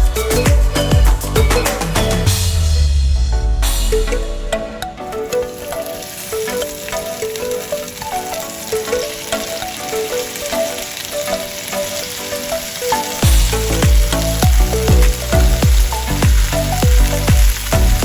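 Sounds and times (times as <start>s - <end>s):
heavy kick-drum beat: 0.0s - 4.4s, 13.2s - 18.0s
light melodic background music: 0.0s - 18.0s
food sizzling in a pan: 5.2s - 18.0s.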